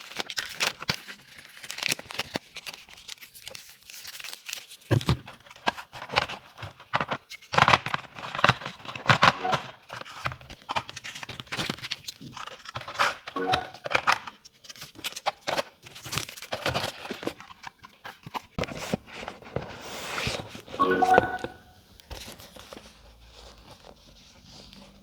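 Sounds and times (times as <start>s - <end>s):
packaging crinkling and rustling: 0.0s - 13.3s, 14.7s - 20.8s.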